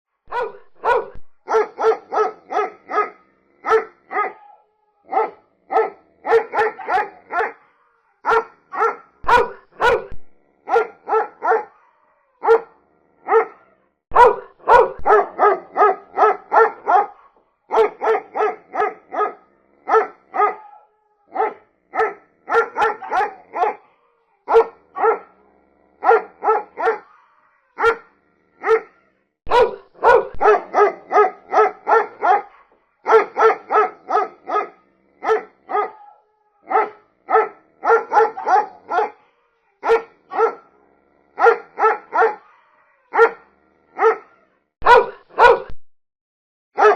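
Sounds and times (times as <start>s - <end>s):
dog barking: 0.3s - 45.8s.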